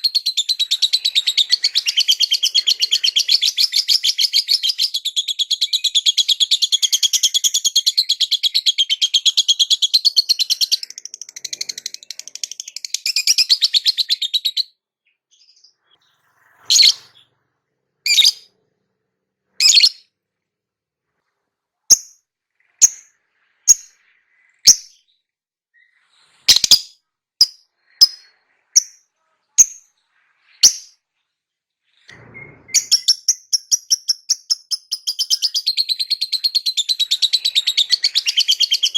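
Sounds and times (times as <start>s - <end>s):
bird chattering and chirping: 0.0s - 14.6s, 16.7s - 17.2s, 18.1s - 18.5s, 19.6s - 20.0s, 21.9s - 22.2s, 22.8s - 23.9s, 26.5s - 29.0s, 30.6s - 30.9s, 32.1s - 38.9s.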